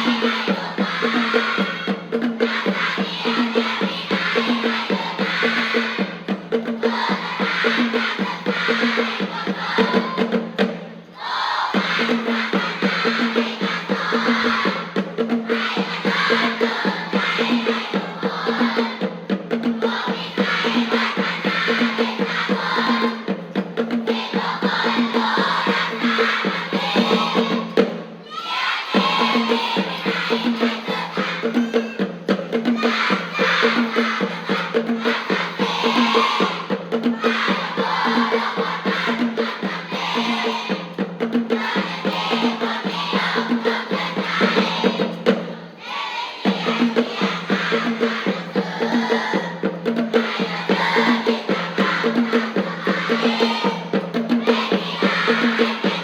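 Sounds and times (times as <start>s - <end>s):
upbeat music with driving percussion: 0.0s - 45.8s, 46.4s - 56.0s.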